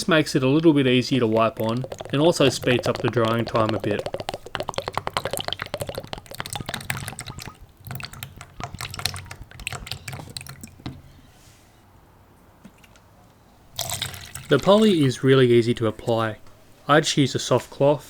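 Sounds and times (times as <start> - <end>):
liquid splashing and dripping: 1.1 - 11.1, 13.8 - 14.8.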